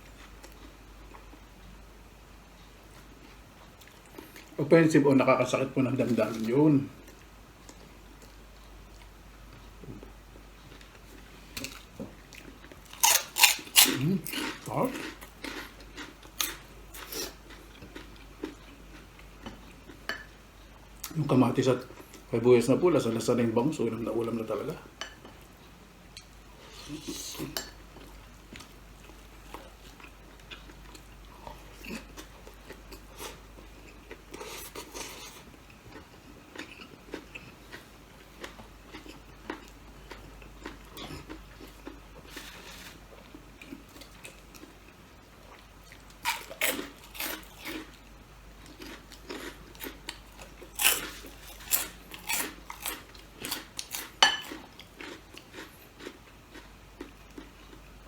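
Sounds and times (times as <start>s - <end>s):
person chewing: 10.7s - 20.0s, 26.2s - 57.9s.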